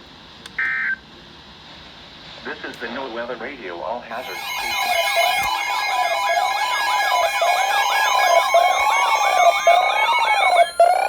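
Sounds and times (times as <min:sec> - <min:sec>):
electronic sirens wailing: 0:04.2 - 0:11.0.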